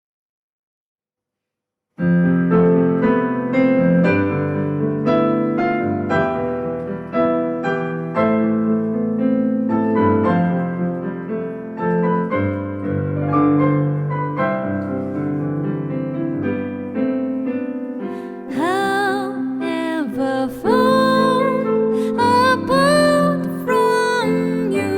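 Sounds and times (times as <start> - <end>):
solo piano playing: 2.0 - 24.9
person singing with wavering voice: 18.5 - 24.9.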